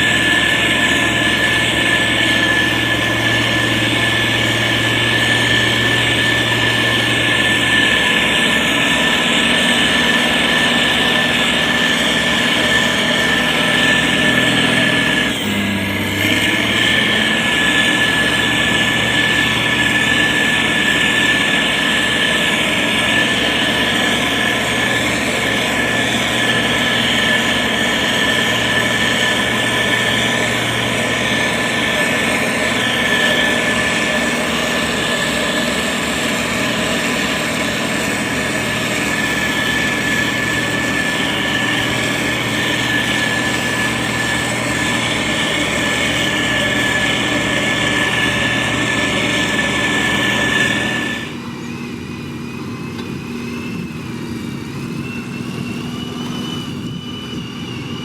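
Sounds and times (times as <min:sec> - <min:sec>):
construction machinery engine: 0:00.0 - 0:58.0
high whine: 0:00.0 - 0:58.0.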